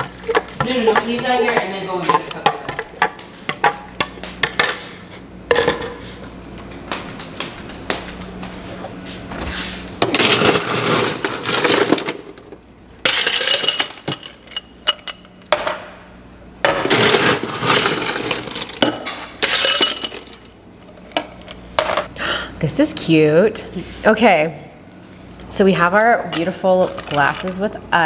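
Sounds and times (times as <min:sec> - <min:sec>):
ice cubes clinking into glasses: 0:13.1 - 0:15.2, 0:16.9 - 0:20.5.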